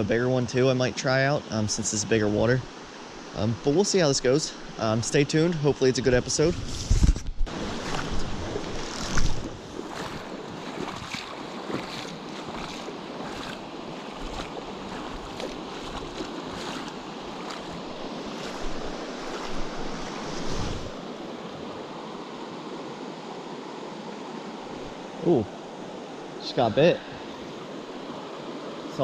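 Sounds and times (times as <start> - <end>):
wind buffeting microphone: 6.4 - 21.0
fast-flowing stream rushing: 7.5 - 29.0.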